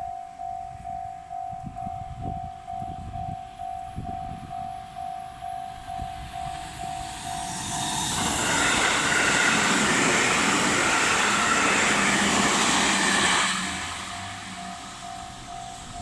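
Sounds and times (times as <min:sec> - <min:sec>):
level crossing bell ringing: 0:00.0 - 0:07.8, 0:14.1 - 0:16.0
electric train passing: 0:00.0 - 0:16.0
wheels on rails: 0:00.4 - 0:16.0.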